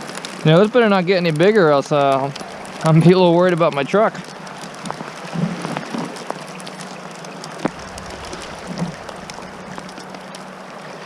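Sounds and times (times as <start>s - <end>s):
hail and rain falling: 0.0s - 11.0s.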